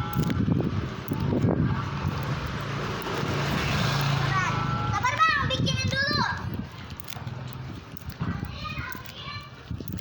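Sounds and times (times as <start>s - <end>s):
wind on microphone: 0.0s - 3.9s, 4.9s - 10.0s
low traffic rumble: 0.0s - 10.0s
small clicks: 0.1s - 0.4s, 6.4s - 9.2s, 9.8s - 10.0s.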